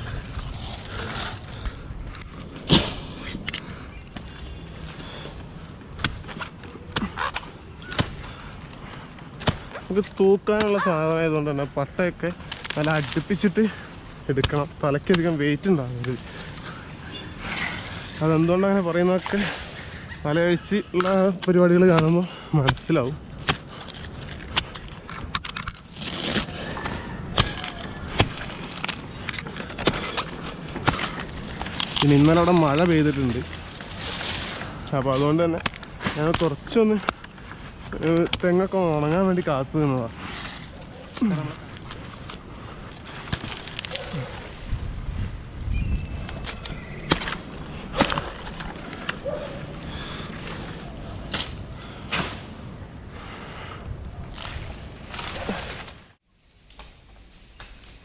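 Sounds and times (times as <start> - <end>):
rustling of palm fronds: 0.0 - 58.0
sharp knocks of cutting fronds: 5.9 - 10.9, 50.4 - 52.6.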